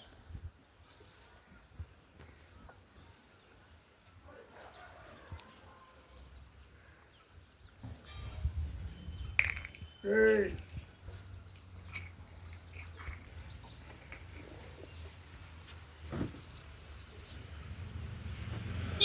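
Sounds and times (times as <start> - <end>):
bird chirps: 7.0 - 15.1.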